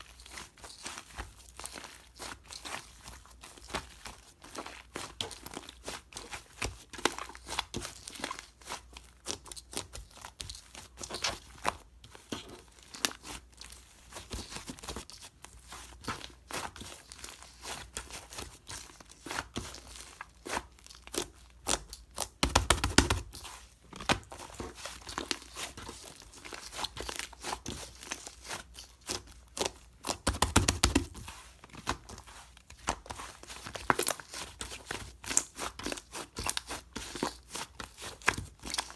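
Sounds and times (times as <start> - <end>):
slime squishing: 15.6 - 38.9.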